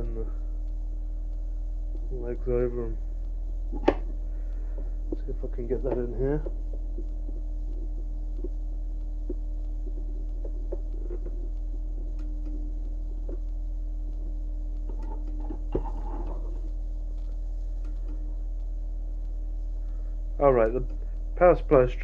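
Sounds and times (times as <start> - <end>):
steady electrical hum: 0.0 - 22.0
small clicks and taps: 3.2 - 8.6, 9.2 - 20.0.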